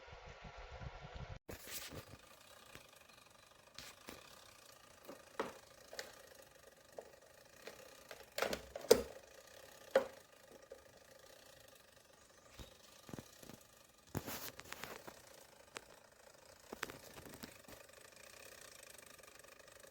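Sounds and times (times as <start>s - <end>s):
plastic clicks and knocks of fan: 5.0s - 6.3s, 7.0s - 10.9s.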